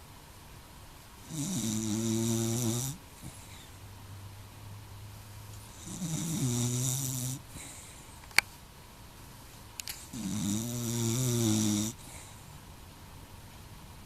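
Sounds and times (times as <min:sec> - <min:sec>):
dog snoring: 0:01.2 - 0:03.6, 0:05.7 - 0:07.9, 0:10.0 - 0:12.4.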